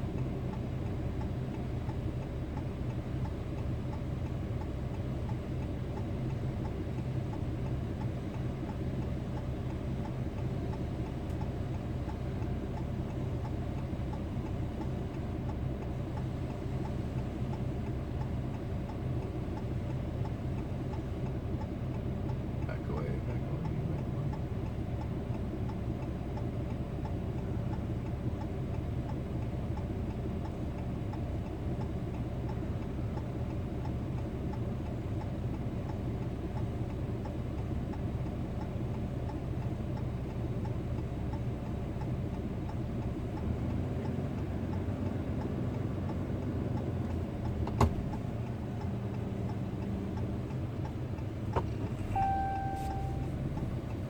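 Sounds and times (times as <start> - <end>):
engine idling: 0.0 - 54.0
faint regular ticking: 0.0 - 54.0
brief steady tone: 52.0 - 53.7.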